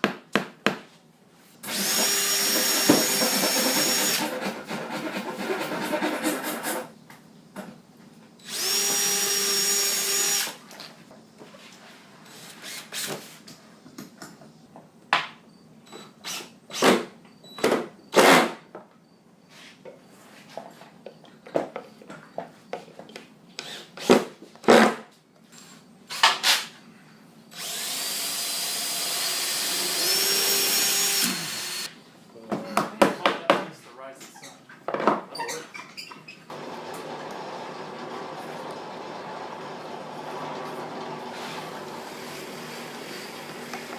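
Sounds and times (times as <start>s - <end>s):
power tool running: 1.6s - 4.4s, 8.5s - 10.6s, 27.5s - 31.9s, 36.5s - 43.9s
wood and tools knocking: 1.8s - 6.8s.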